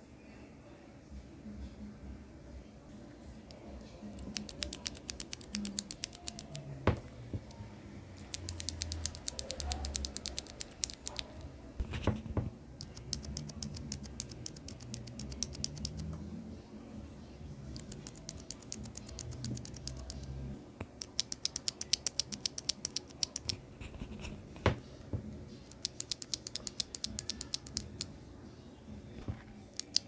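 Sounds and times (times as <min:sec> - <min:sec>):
mechanical keyboard clicking: 0:04.2 - 0:06.7, 0:08.2 - 0:11.4, 0:12.8 - 0:16.1, 0:17.7 - 0:20.3, 0:21.0 - 0:23.6, 0:25.7 - 0:28.1, 0:29.8 - 0:30.0.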